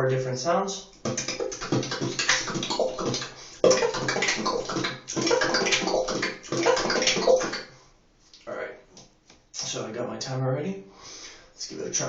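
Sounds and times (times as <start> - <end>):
fast beatboxing: 1.0 - 7.8.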